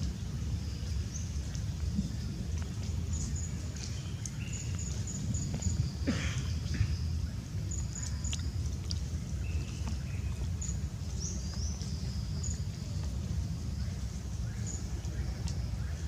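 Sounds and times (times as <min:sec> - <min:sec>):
steady low rumble: 0:00.0 - 0:16.0.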